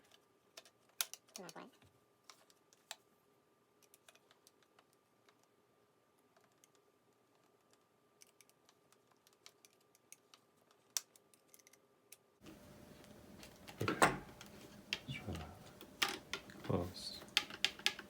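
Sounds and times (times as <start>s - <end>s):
small parts clicking and tapping: 0.0s - 3.1s, 3.8s - 5.5s, 6.2s - 12.4s, 13.0s - 18.0s
faint steady hum: 11.8s - 18.0s.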